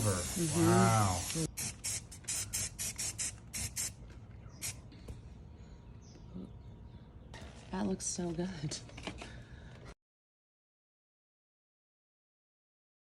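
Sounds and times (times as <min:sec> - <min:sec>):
short high-pitched hissing strokes: 0:00.0 - 0:04.0.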